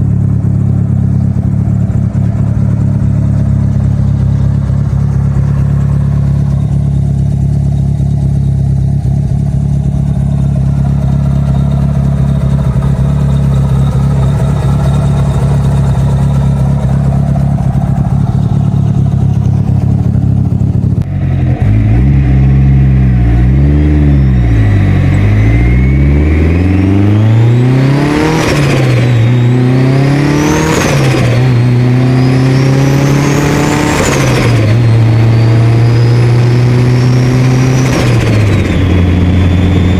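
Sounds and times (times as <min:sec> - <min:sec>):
car engine revving: 0:00.0 - 0:39.9
turbo whistle: 0:23.2 - 0:30.0, 0:30.7 - 0:39.9.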